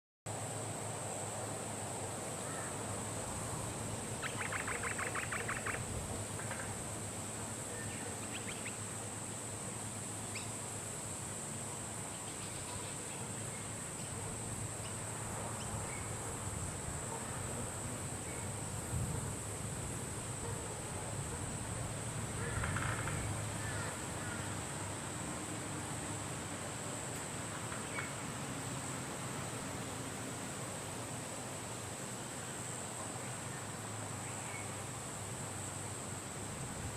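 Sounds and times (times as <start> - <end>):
macaws clicking chatter: 4.2 - 6.8, 8.2 - 8.8, 22.4 - 24.4.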